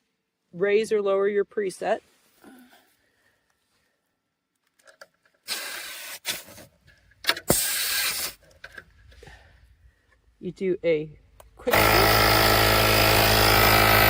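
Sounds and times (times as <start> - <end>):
air hissing: 7.5 - 8.4.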